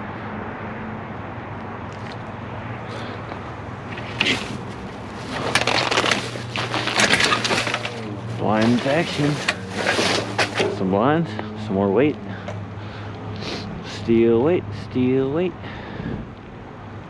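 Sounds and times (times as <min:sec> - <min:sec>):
scrap clattering in dumpster: 0:03.9 - 0:10.9
steady low rumble: 0:13.8 - 0:16.7.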